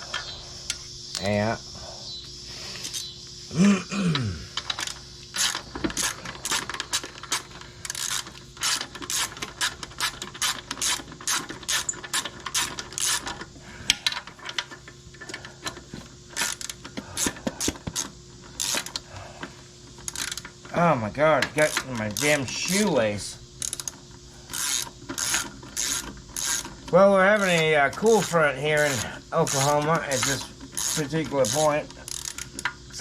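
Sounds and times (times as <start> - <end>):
socket ratchet clicking: 23.6 - 26.7, 30.2 - 32.7.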